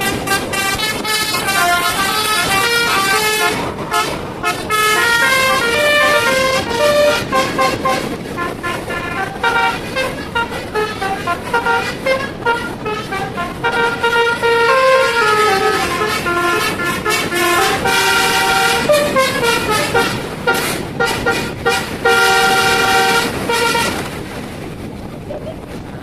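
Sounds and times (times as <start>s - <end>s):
musical bus air horn playing a tune: 0.0s - 24.2s.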